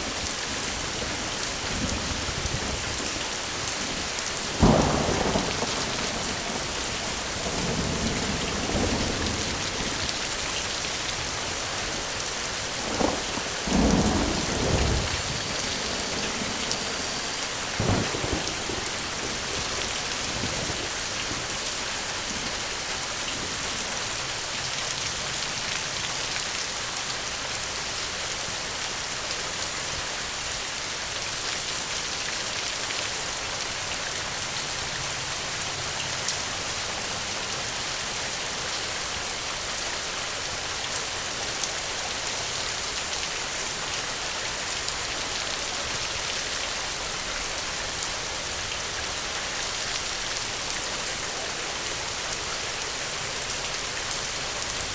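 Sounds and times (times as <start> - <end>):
steady rain hissing: 0.0 - 54.9
raindrops ticking: 4.3 - 11.5, 12.3 - 21.5.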